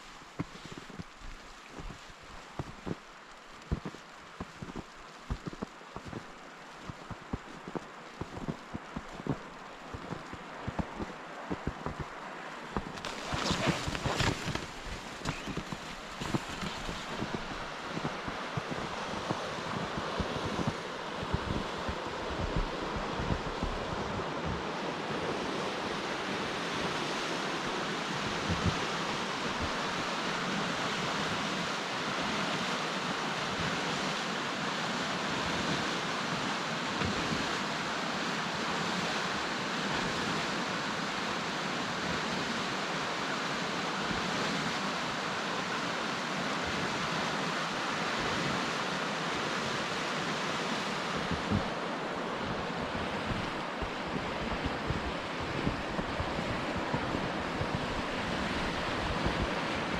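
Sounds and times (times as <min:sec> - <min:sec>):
wind rushing in snowstorm: 0:00.0 - 0:59.9
wind buffeting microphone: 0:51.0 - 0:59.9.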